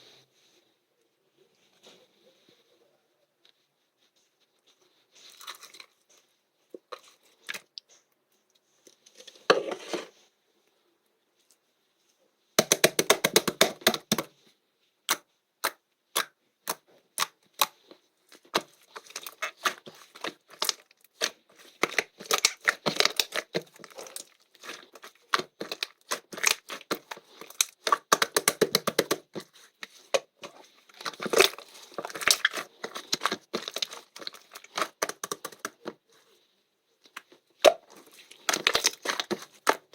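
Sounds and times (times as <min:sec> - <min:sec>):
slime squishing by hand: 0:12.6 - 0:14.4, 0:15.0 - 0:39.9.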